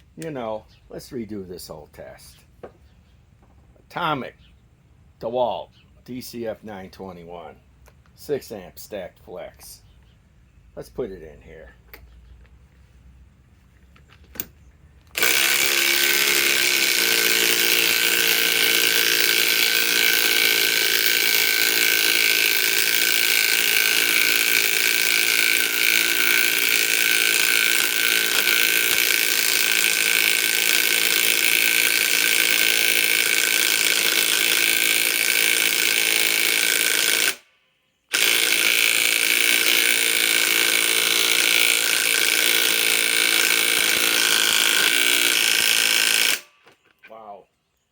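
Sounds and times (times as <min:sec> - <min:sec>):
impact wrench hammering: 0:15.1 - 0:37.5, 0:38.1 - 0:46.6.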